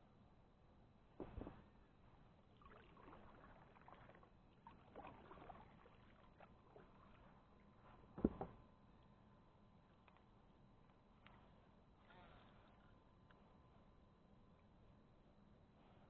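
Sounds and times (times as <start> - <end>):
paddle splashing water: 2.6 - 7.4.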